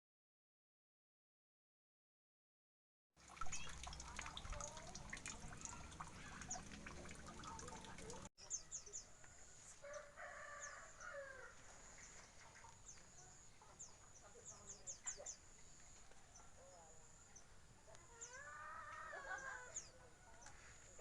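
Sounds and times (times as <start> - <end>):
small birds chirping: 3.3 - 21.0
rooster crowing: 9.3 - 11.6.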